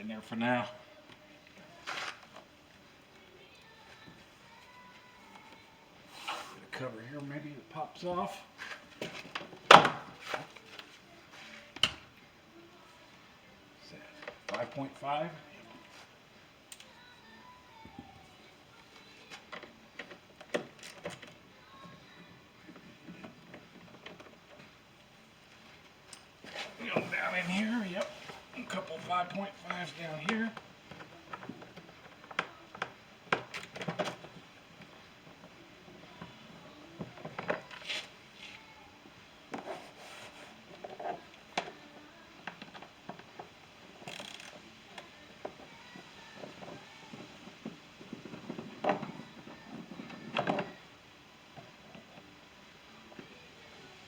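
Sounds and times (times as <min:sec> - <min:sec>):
hissing scrapes: 0:06.0 - 0:06.8, 0:26.4 - 0:29.0
hand tools clicking and tapping: 0:42.4 - 0:49.2.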